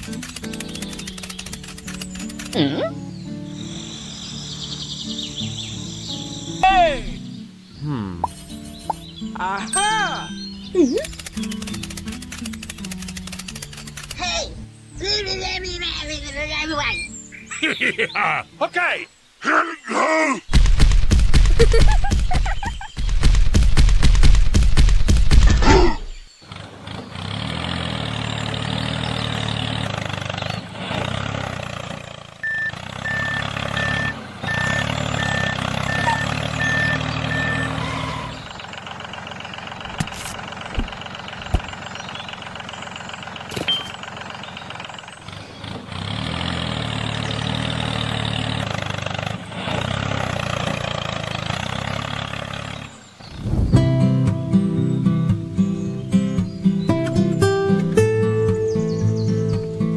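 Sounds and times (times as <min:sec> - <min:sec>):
vehicle engine running: 0:00.0 - 0:06.5, 0:09.8 - 0:17.5, 0:26.3 - 0:59.9
short high beeps: 0:32.4 - 0:38.3.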